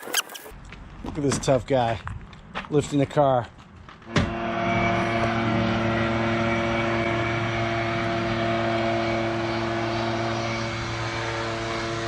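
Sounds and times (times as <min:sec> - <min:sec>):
leaf blower running: 0:04.2 - 0:12.0.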